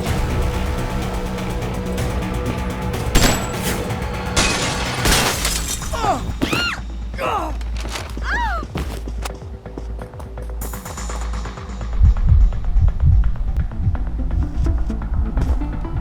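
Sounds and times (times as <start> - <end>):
background music: 0.0 - 16.0
crashes with glass shattering: 3.2 - 6.6.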